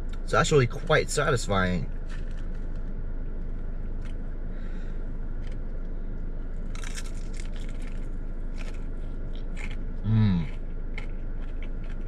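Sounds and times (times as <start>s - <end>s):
steady low hum: 0.0s - 12.0s
person chewing crunchy food: 5.4s - 5.8s, 6.6s - 12.0s.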